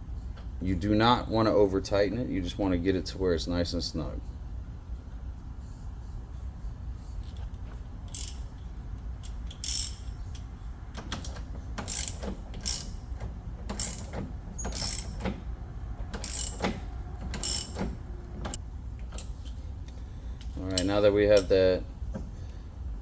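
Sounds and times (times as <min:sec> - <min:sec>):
ratchet wrench clicking: 0:07.3 - 0:08.6, 0:09.2 - 0:15.3, 0:16.1 - 0:17.9, 0:20.4 - 0:21.6.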